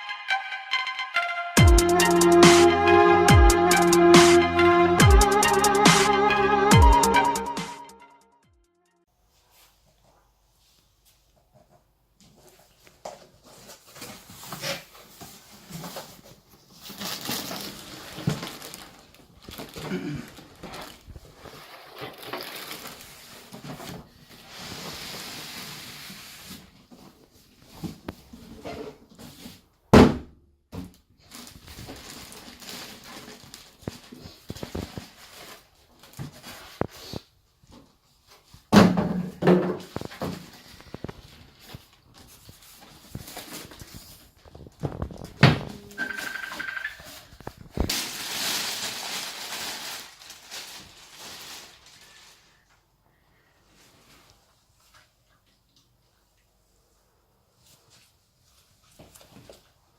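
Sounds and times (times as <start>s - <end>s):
cardboard packaging rustling: 12.4s - 28.4s, 31.2s - 38.7s, 39.8s - 45.4s, 46.0s - 52.7s.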